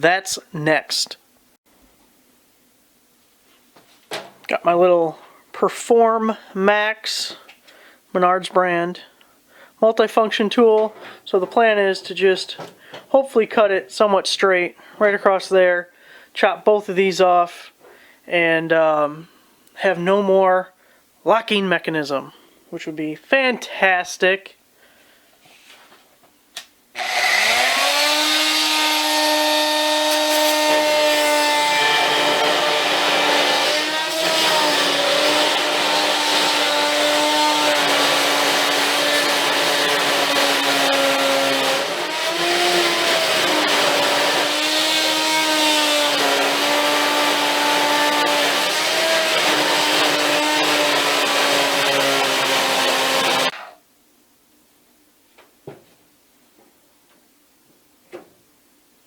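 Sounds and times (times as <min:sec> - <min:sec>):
multi-tool whine: 0:27.0 - 0:53.5.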